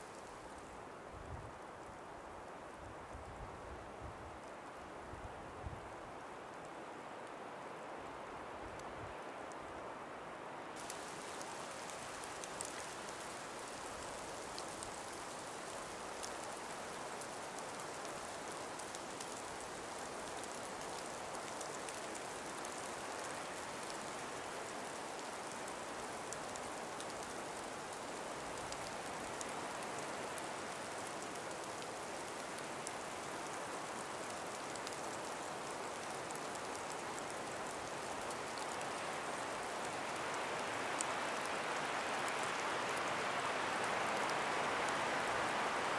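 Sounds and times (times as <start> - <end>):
breeze through trees: 0.0 - 45.9
faint ticks: 10.8 - 45.5.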